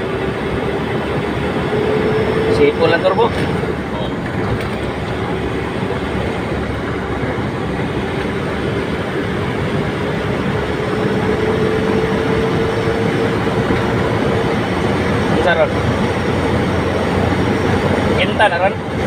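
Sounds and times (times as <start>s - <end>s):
diesel engine running: 0.0s - 19.0s
turbo whistling whine: 0.0s - 19.0s.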